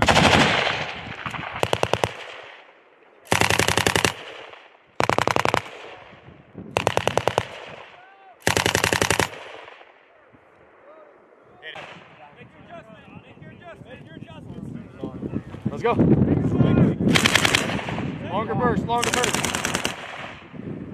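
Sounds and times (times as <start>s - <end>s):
machine gun firing bursts: 0.0s - 2.6s, 3.3s - 6.1s, 6.8s - 9.9s, 17.1s - 18.1s, 19.0s - 20.4s.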